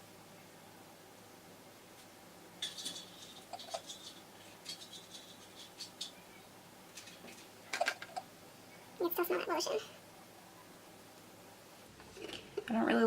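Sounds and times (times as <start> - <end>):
makeup brush bristles scratching: 2.6 - 6.2.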